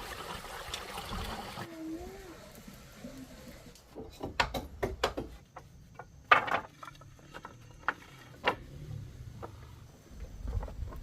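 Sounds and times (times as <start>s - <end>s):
hard objects knocking and clattering: 4.0s - 8.6s.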